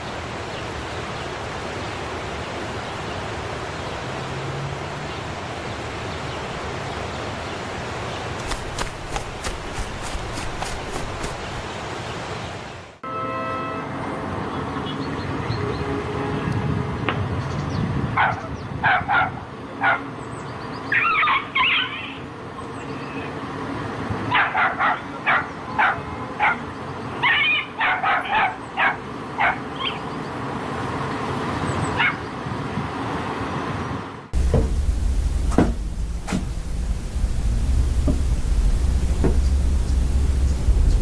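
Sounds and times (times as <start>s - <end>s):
small dog yipping: 20.9s - 22.2s, 27.2s - 30.0s, 32.0s - 32.2s.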